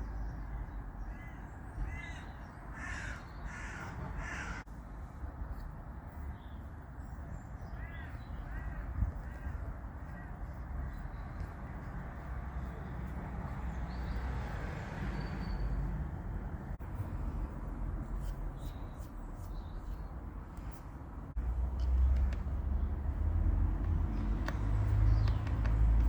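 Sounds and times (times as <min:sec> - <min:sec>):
crow cawing: 0:01.1 - 0:04.6.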